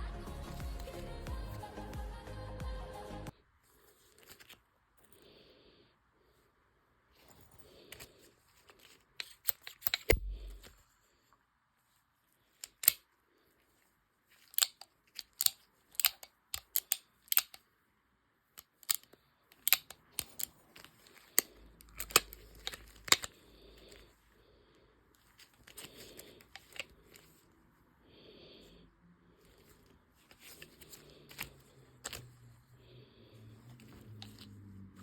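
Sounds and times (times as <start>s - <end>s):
heavy thud: 10.1s - 10.6s
revolver metallic clicks: 18.6s - 23.3s.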